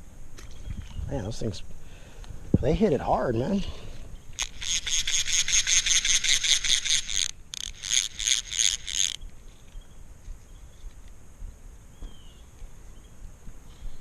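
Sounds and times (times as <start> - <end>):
fishing reel clicker ratcheting: 4.4 - 9.2.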